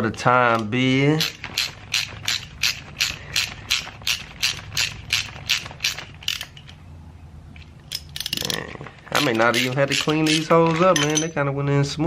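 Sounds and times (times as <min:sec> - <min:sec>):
hand ratchet clicking: 0:00.5 - 0:06.8, 0:07.9 - 0:08.6, 0:09.2 - 0:11.3.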